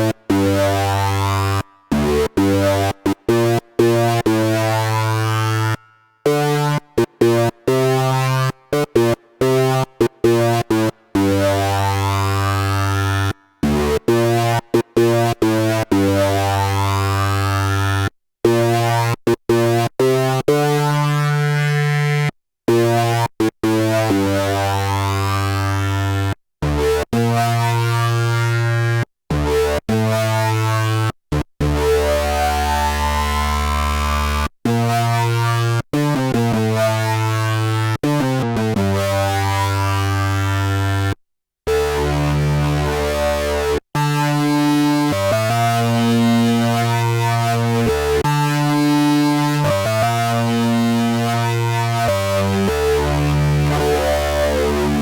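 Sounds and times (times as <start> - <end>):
synthesizer chords and stabs: 41.7 - 55.0.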